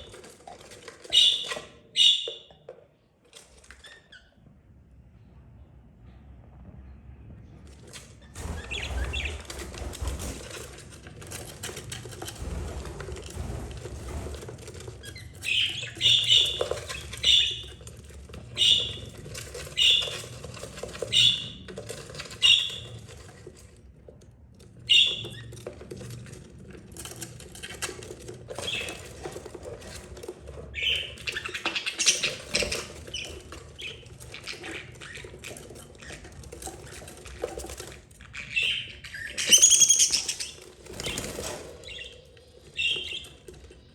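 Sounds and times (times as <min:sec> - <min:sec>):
birds fluttering and chattering: 0:00.0 - 0:04.5, 0:07.6 - 0:43.9
budgerigars calling: 0:15.4 - 0:17.7, 0:18.6 - 0:19.0, 0:19.8 - 0:20.2.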